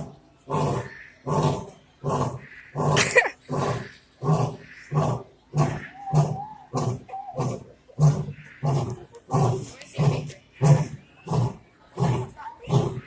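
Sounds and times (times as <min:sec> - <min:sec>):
lion roaring: 0:00.0 - 0:13.0.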